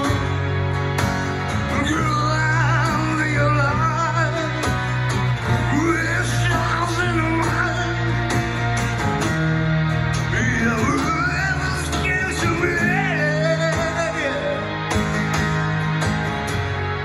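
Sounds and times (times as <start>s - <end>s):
sustained bass notes: 0.0s - 17.0s
person singing: 1.6s - 8.5s, 10.3s - 14.9s.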